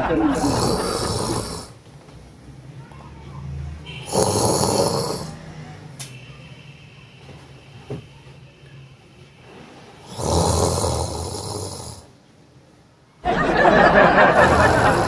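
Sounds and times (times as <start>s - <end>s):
man snoring loudly: 0.2s - 1.8s, 4.0s - 5.4s, 10.0s - 12.1s, 14.3s - 15.0s.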